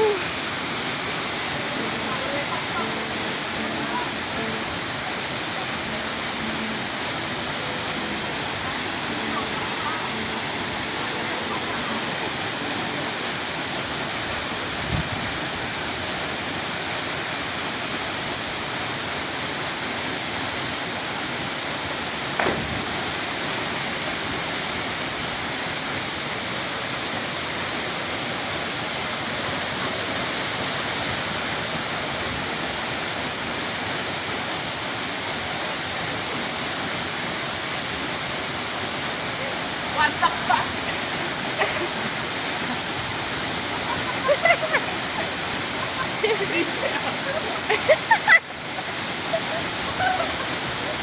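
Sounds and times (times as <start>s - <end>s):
waterfall rushing: 0.0s - 51.0s
brief knock: 22.4s - 22.7s.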